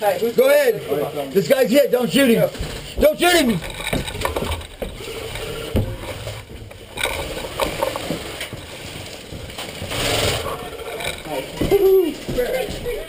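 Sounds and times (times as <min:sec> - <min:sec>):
rifle handling knocks and rattles: 0:02.5 - 0:10.0.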